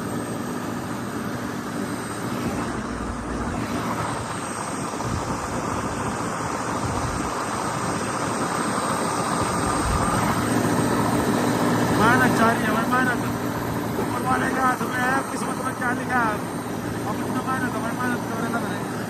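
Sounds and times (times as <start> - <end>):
road and wind noise: 1.8 - 12.0.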